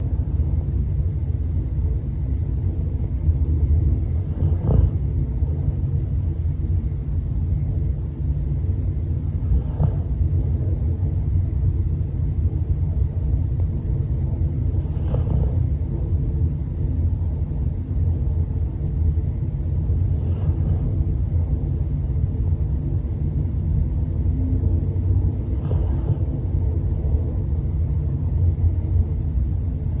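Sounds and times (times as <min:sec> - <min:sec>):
dog snoring: 0:00.0 - 0:00.6, 0:03.8 - 0:06.4, 0:08.9 - 0:11.1, 0:14.4 - 0:16.1, 0:19.9 - 0:22.3, 0:25.2 - 0:27.5.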